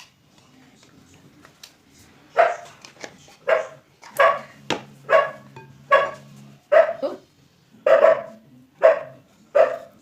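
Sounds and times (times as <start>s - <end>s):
dog barking: 2.3s - 2.7s, 3.4s - 7.2s, 7.8s - 10.0s.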